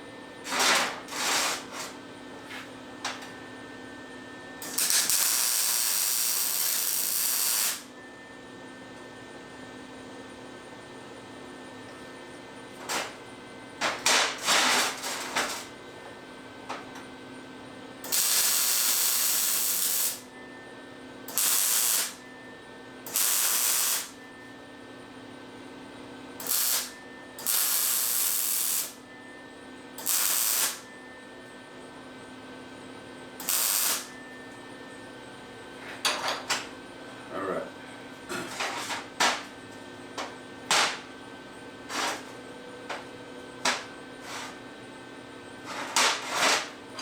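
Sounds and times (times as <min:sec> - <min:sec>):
welder hissing and crackling: 0:04.6 - 0:07.9, 0:18.0 - 0:20.2, 0:21.3 - 0:22.2, 0:23.1 - 0:24.2, 0:26.4 - 0:29.0, 0:30.0 - 0:30.8, 0:33.4 - 0:34.1.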